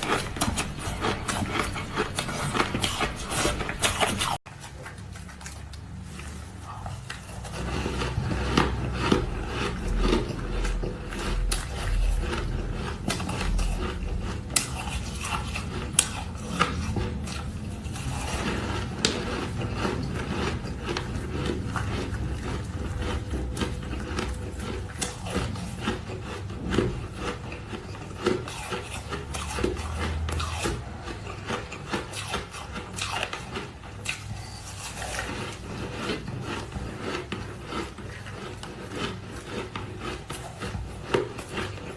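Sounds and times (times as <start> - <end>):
ice crunching and scraping: 0.0 - 4.4, 6.0 - 33.7.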